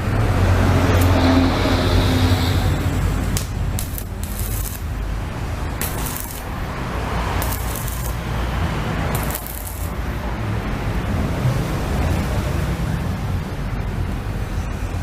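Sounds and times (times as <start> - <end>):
low welder hum: 2.4 - 10.4
arc welder crackling hiss: 2.5 - 10.2.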